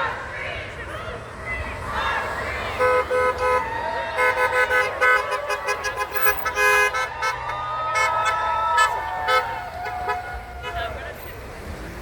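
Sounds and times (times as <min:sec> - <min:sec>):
car horns honking: 0:02.6 - 0:11.4.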